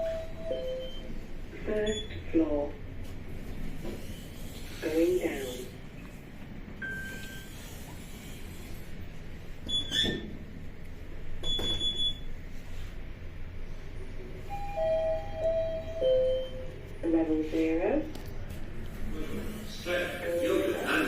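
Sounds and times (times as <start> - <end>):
lift arrival chime: 0.0 - 1.2, 14.4 - 16.9, 20.1 - 21.0.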